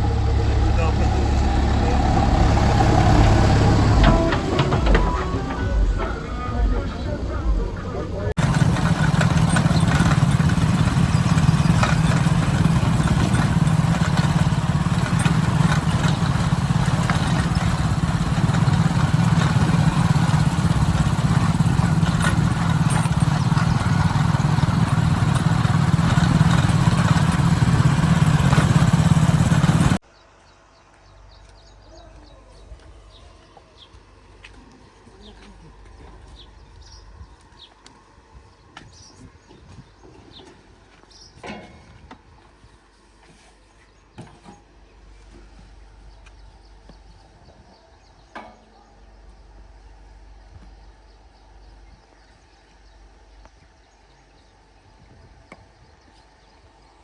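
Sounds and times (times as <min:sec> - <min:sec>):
heavy machinery diesel engine: 0:00.0 - 0:06.1, 0:08.2 - 0:30.0.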